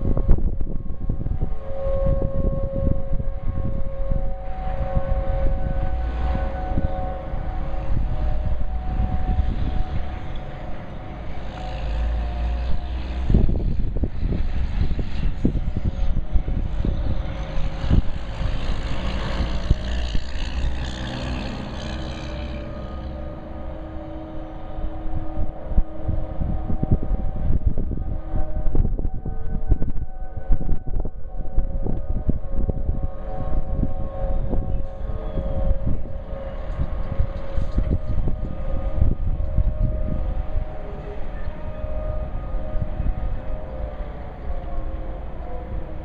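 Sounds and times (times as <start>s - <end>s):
distant warning sirens: 0.0s - 46.0s
wind buffeting microphone: 0.0s - 46.0s
passing vehicle rush: 4.8s - 28.6s.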